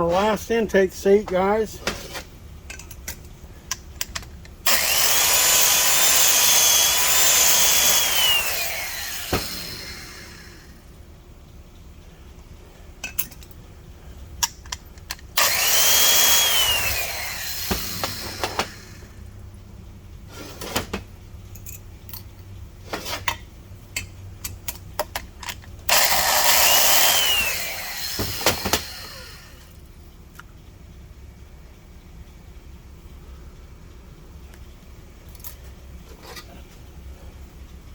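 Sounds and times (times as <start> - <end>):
valve seat grinder whining: 4.6 - 10.9, 15.3 - 19.3, 25.9 - 29.8.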